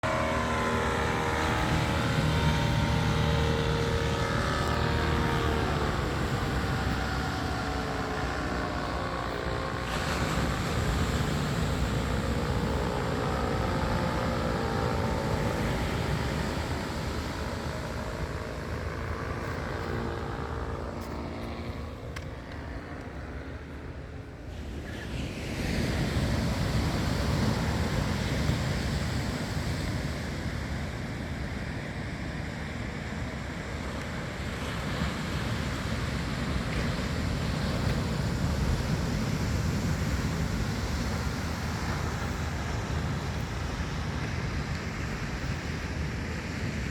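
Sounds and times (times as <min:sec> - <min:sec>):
steady low rumble: 0:00.0 - 0:24.8.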